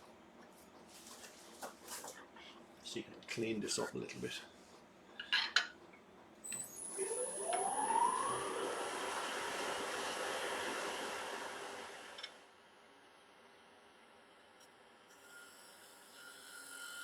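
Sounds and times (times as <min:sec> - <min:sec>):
lathe motor whine: 0:06.5 - 0:12.3.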